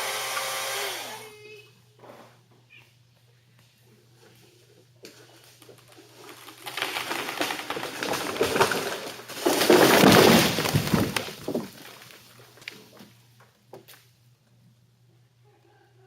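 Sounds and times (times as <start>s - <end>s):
wood and brush crackling: 5.6s - 13.2s.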